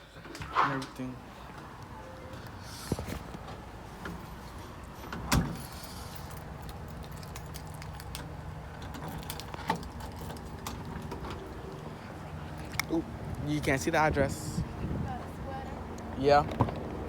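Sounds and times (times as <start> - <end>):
car engine humming: 0.0 - 17.0
small clicks and rattles: 5.7 - 11.5.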